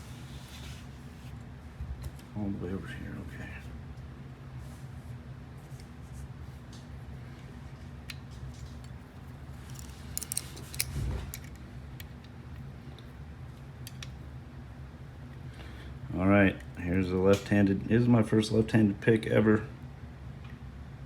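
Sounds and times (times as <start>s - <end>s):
steady low hum: 0.0s - 21.0s
metallic clicks of lock picks: 9.7s - 12.3s.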